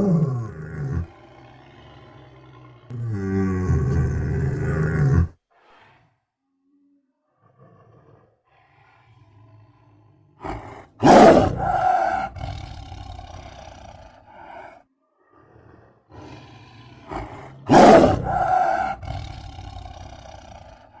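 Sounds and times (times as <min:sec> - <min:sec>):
big cat growling: 0:00.0 - 0:06.2, 0:07.4 - 0:21.0.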